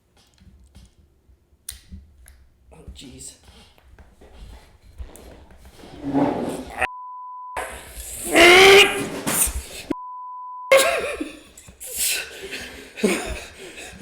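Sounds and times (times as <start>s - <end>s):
censor bleeps: 6.9s - 7.6s, 10.0s - 10.8s
loud voices: 7.6s - 10.0s.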